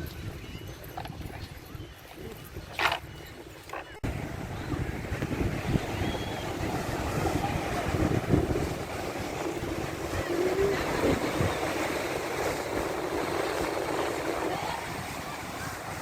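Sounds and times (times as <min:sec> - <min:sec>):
wind buffeting microphone: 0:00.0 - 0:16.0
steady rushing noise: 0:04.0 - 0:16.0.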